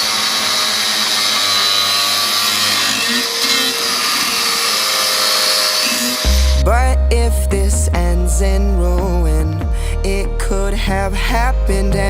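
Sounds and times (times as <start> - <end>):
power tool hissing and whining: 0.0 - 6.7.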